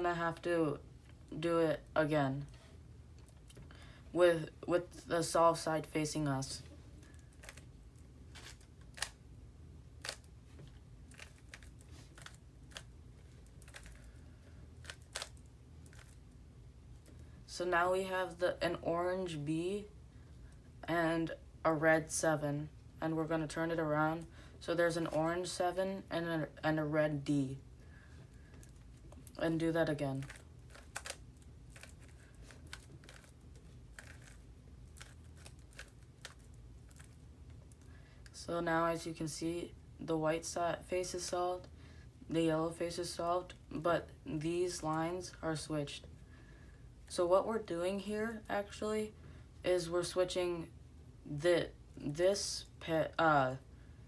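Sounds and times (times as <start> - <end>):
low steady background hum: 0.0 - 54.0
puzzle cube clicks and rattles: 11.1 - 14.1, 14.8 - 16.2, 30.2 - 37.2.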